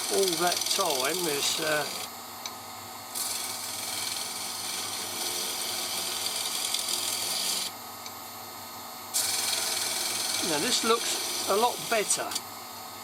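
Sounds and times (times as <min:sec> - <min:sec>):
lathe motor humming: 0:00.0 - 0:02.2, 0:03.2 - 0:07.7, 0:09.2 - 0:12.5
tool cutting spinning wood: 0:00.0 - 0:02.2, 0:03.1 - 0:07.8, 0:09.1 - 0:12.5.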